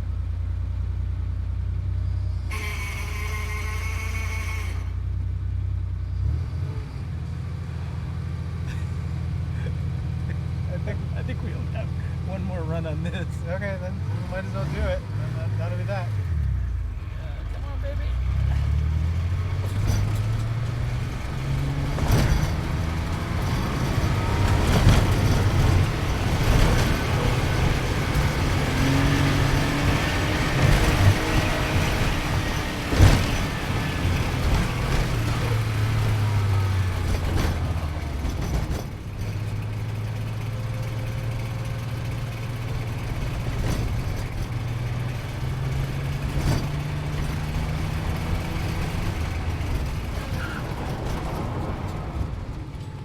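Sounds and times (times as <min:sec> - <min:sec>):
sports car engine revving: 0:09.6 - 0:50.9.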